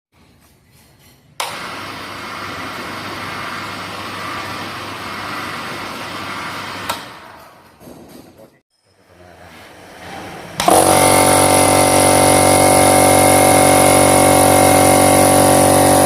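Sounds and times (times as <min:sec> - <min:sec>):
air compressor whirring: 0:01.4 - 0:07.6, 0:08.9 - 0:16.0.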